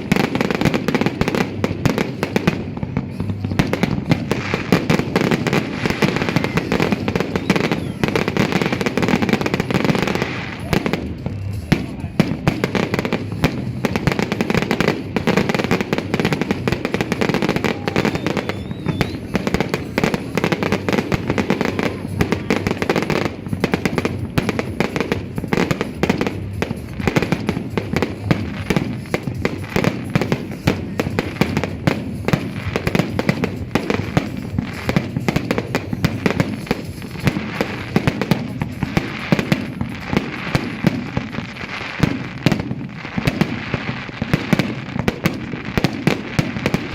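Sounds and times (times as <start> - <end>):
fireworks crackling and popping: 0.0 - 46.9.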